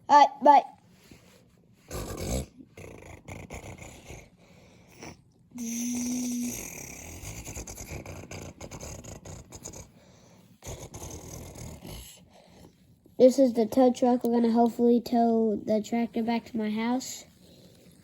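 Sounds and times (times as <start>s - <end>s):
person imitating engine with mouth: 1.9s - 4.3s, 4.9s - 9.9s, 10.6s - 12.3s.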